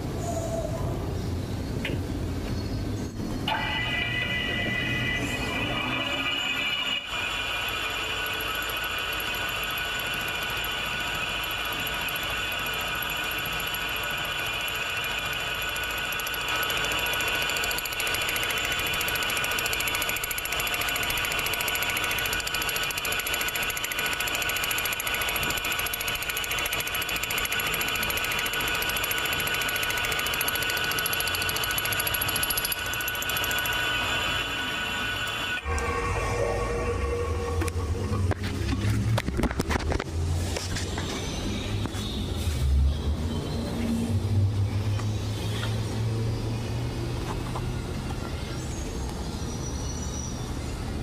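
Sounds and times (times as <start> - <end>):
metal lathe whining: 3.5 - 39.7.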